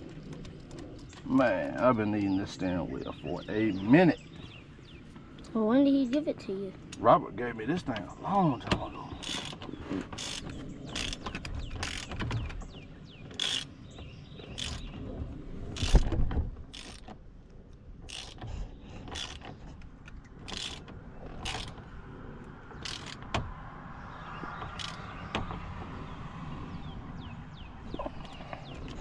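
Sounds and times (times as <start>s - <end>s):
steering column clicks and clanks: 7.8s - 17.3s, 18.0s - 22.0s, 22.8s - 23.5s, 24.5s - 26.2s.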